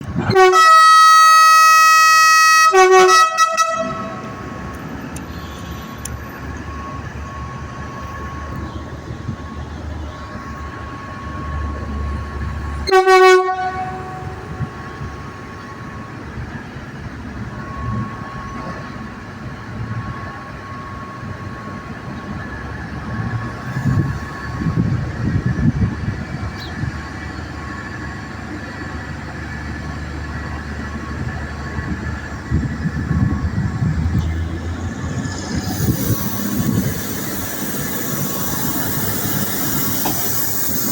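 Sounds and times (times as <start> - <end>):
train horn blast: 0.2 - 4.6, 12.8 - 14.8
diesel engine at high idle: 3.9 - 13.1, 13.8 - 40.9.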